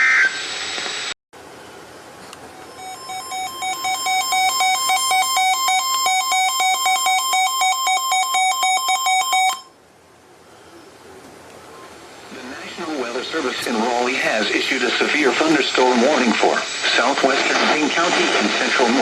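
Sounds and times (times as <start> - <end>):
emergency alert tone: 2.6 - 9.8.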